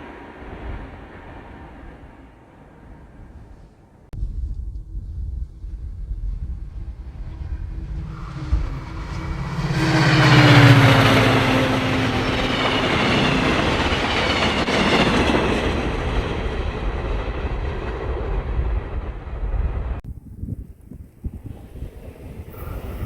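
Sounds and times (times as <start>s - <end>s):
train passing: 0.0s - 4.1s, 6.4s - 20.0s, 21.0s - 23.0s.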